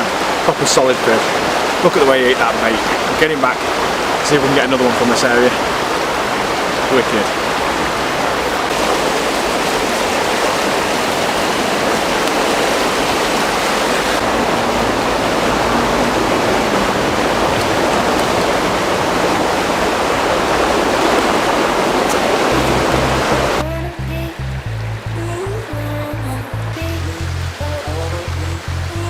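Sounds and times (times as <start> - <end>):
water rushing over weir: 0.0 - 29.0
low music notes: 22.2 - 29.0.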